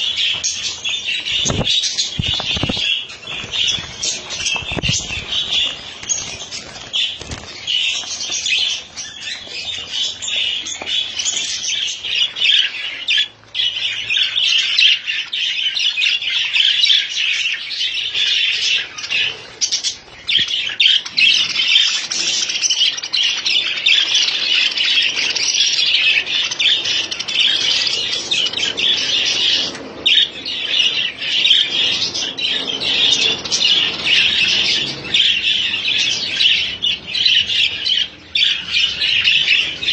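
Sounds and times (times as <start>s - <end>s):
birds chattering and squawking: 0.0s - 39.9s.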